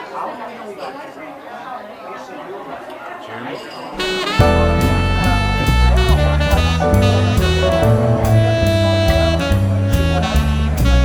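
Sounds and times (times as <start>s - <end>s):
jazz drums: 4.0s - 11.0s
saxophone melody: 4.0s - 11.0s
walking double bass: 4.0s - 11.0s.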